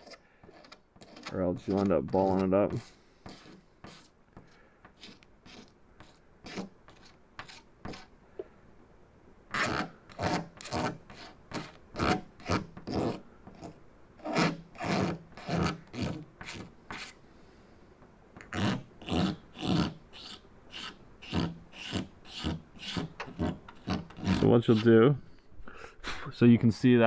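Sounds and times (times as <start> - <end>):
razor blade scraping clear coat: 0.0 - 4.1, 4.9 - 8.1, 9.5 - 17.2, 18.4 - 24.9.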